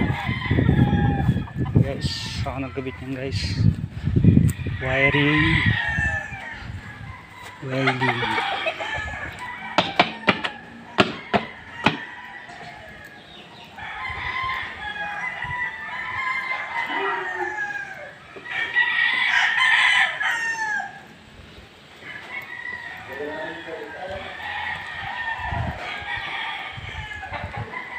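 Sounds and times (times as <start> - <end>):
roosters crowing: 0.0 - 27.9
sharp knocks: 9.8 - 12.1.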